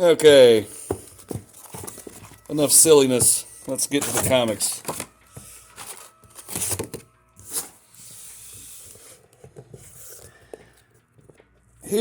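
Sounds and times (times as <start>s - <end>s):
bubble wrap rustling: 3.7s - 8.9s.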